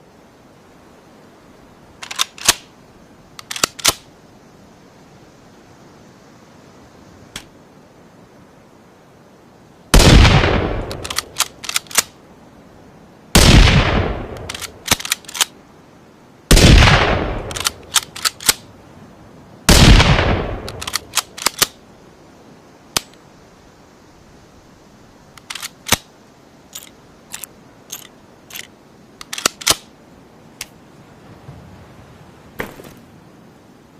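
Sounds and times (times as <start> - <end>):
rifle bolt clicks: 2.0 - 2.7, 3.4 - 4.0, 10.8 - 12.1, 14.3 - 15.5, 17.4 - 18.6, 20.6 - 21.8, 25.4 - 26.1, 26.8 - 29.9
rifle shots: 10.0 - 12.1, 13.4 - 15.5, 16.5 - 18.6, 19.7 - 21.7.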